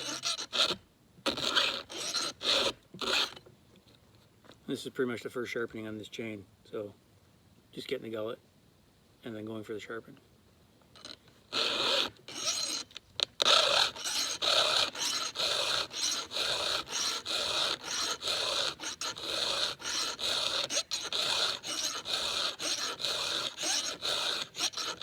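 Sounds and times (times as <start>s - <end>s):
file rasping on saw chain: 0.0s - 3.4s, 11.0s - 25.0s.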